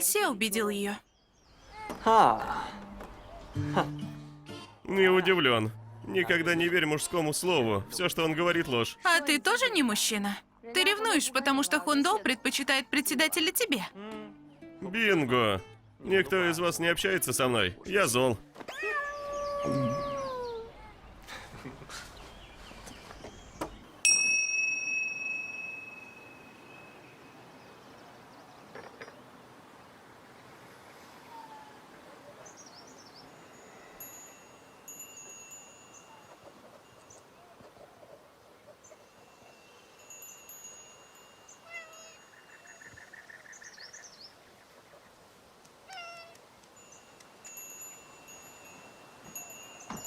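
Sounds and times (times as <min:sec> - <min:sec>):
cat meowing: 0:18.7 - 0:20.8, 0:41.7 - 0:42.2, 0:45.9 - 0:46.4
wind chimes ringing softly: 0:24.0 - 0:28.0, 0:33.2 - 0:37.5, 0:39.0 - 0:42.9, 0:46.7 - 0:50.0
bell-like metallic ding: 0:24.1 - 0:27.4.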